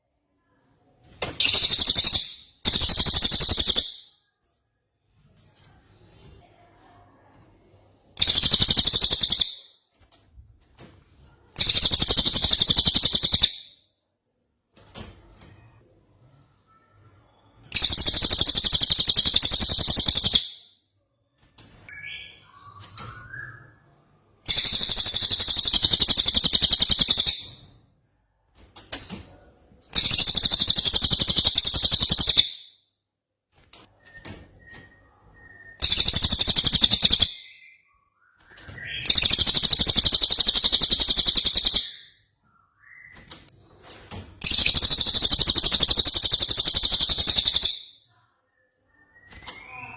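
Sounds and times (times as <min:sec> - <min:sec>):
songbird trilling: 0:39.0 - 0:42.0.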